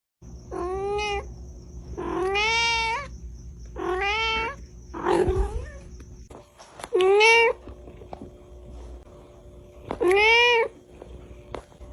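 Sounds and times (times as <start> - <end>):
cat meowing loudly: 2.0 - 3.1, 3.8 - 5.8, 10.0 - 10.7.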